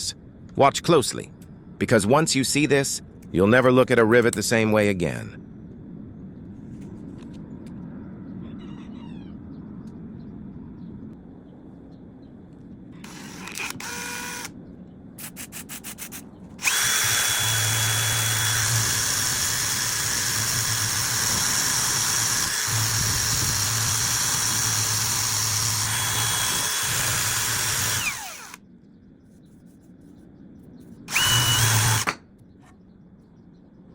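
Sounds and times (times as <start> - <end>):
electric drill whining: 13.0 - 14.5, 16.6 - 28.6, 31.1 - 32.2
drill chuck clicks: 13.1 - 14.5.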